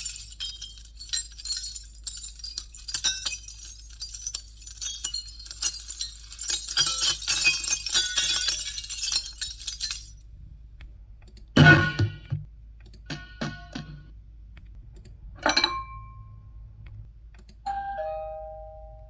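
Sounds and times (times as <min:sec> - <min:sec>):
glass fragments tinkling: 0:00.0 - 0:10.2
sharp clicks: 0:11.2 - 0:11.6, 0:12.8 - 0:13.9, 0:16.9 - 0:17.6
heavy thud: 0:11.6 - 0:12.5.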